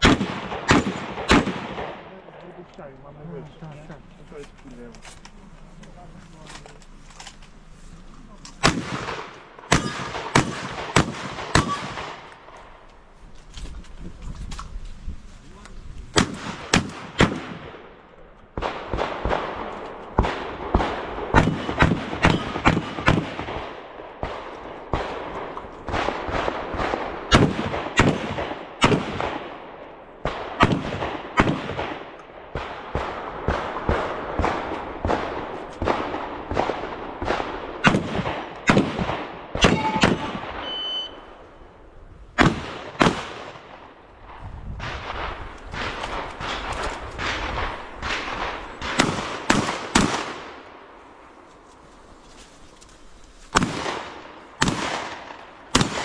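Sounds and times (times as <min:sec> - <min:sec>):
rapid shotgun fire: 0:00.0 - 0:02.2, 0:08.6 - 0:12.6, 0:16.1 - 0:18.0, 0:18.6 - 0:40.7, 0:42.4 - 0:44.0, 0:44.8 - 0:50.8, 0:53.5 - 0:56.0.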